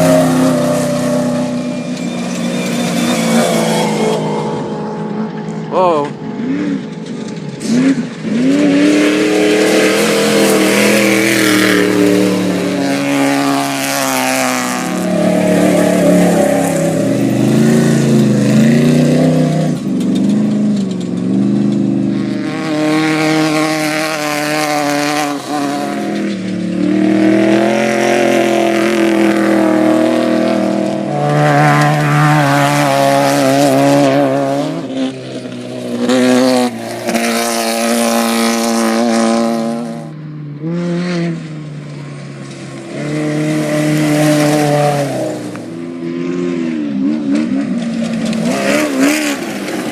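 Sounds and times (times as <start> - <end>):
vehicle engine revving: 0.0 - 49.9.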